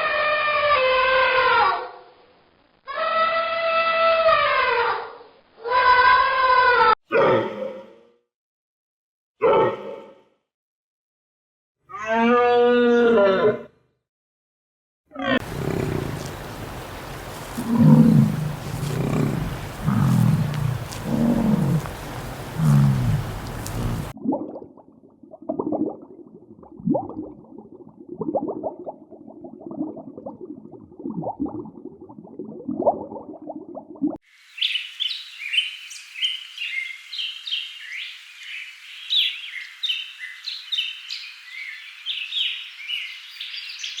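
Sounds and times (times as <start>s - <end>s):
deep animal calls: 15.4s - 24.1s.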